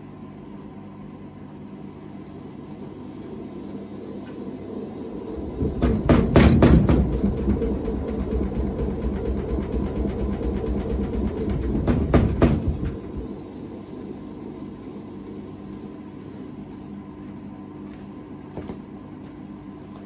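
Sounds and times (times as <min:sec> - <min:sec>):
washing machine drum spinning: 0:04.3 - 0:13.4
loud rumble and rattling: 0:04.3 - 0:13.5
knocks from washing machine: 0:05.2 - 0:13.4.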